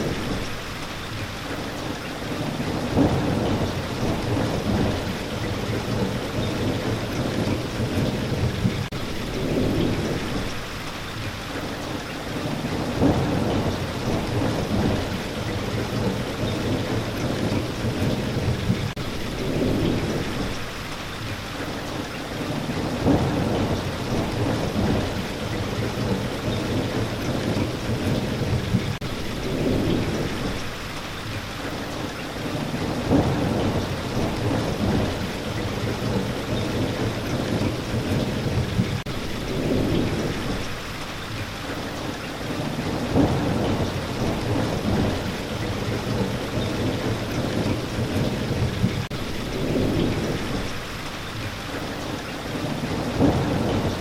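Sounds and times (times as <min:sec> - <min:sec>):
rolling thunder rumbles: 0:00.0 - 0:54.0
steady rain patter: 0:00.0 - 0:54.0.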